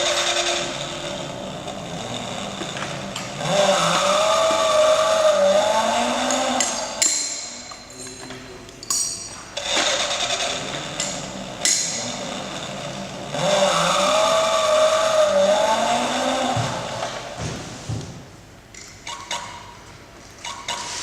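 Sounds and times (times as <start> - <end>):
electronic racing car noises: 0.0 - 7.0, 9.6 - 17.4.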